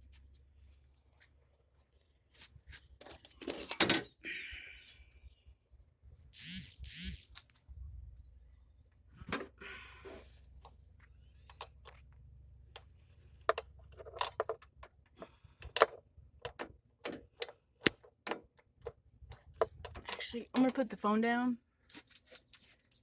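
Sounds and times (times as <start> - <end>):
hand tools clicking on metal: 3.0 - 4.1, 13.5 - 14.9, 15.6 - 21.0.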